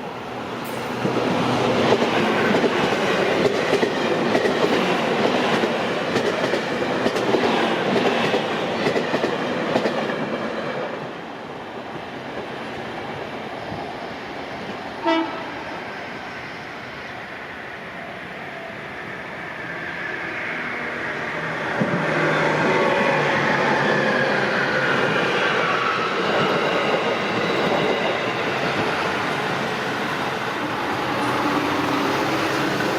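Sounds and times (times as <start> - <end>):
train rushing and rumbling past: 0.0 - 32.9
short sharp train horn toot: 15.0 - 15.8.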